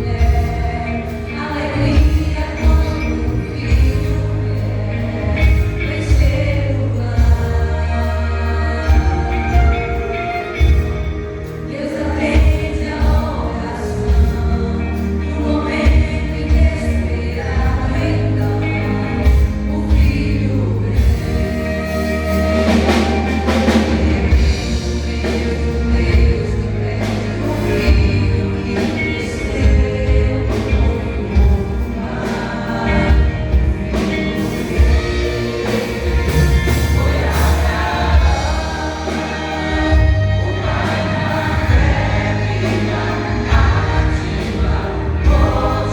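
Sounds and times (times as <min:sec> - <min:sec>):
heavy bass line: 0:00.0 - 0:45.9
vocal group singing in harmony: 0:00.0 - 0:45.9.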